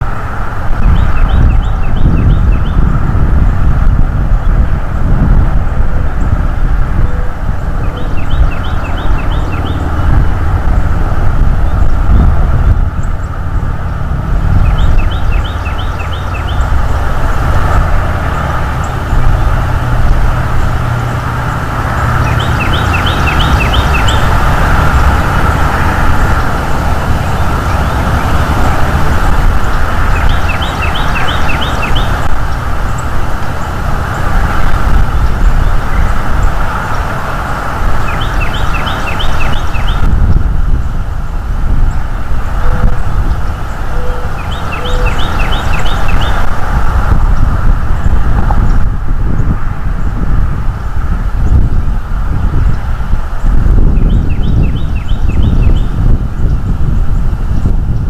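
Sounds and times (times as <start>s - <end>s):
loud background rumble: 0.0s - 58.0s
songbird singing repeated notes: 0.8s - 3.0s, 7.0s - 10.9s, 11.5s - 17.8s, 20.5s - 37.1s, 37.9s - 40.2s, 41.8s - 46.6s, 53.4s - 56.6s.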